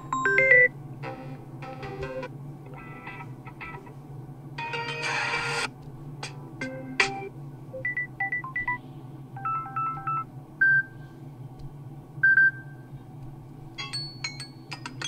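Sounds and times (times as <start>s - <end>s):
electronic ringtone melody: 0.0s - 0.7s, 9.4s - 10.2s.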